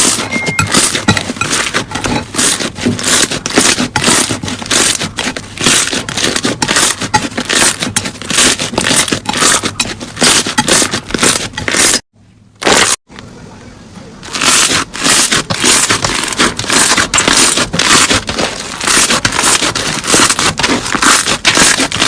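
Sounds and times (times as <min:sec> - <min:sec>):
slime crackling and popping: 0:14.3 - 0:22.0.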